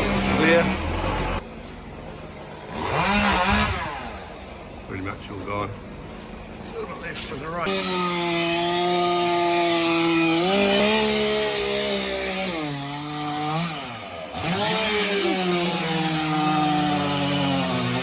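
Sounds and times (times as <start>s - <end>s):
chainsaw cutting wood: 0.0s - 1.4s, 2.6s - 4.8s, 7.6s - 18.0s.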